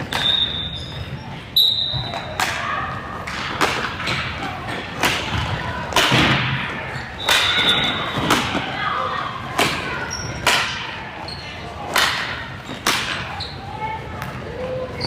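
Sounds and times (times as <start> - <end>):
hockey sticks striking ball: 2.0 - 8.8, 9.5 - 11.0, 11.9 - 13.3.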